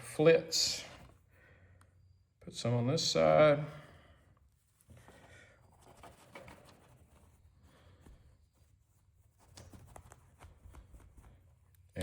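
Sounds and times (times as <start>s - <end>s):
faint rubbing and scratching: 2.6s - 12.0s.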